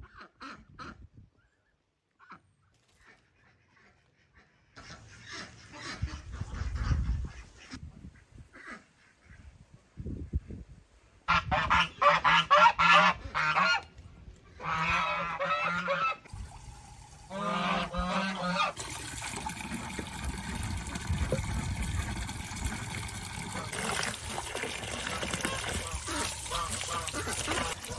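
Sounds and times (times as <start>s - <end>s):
geese honking: 11.3s - 13.9s, 14.5s - 16.3s, 17.3s - 18.8s, 25.0s - 27.9s.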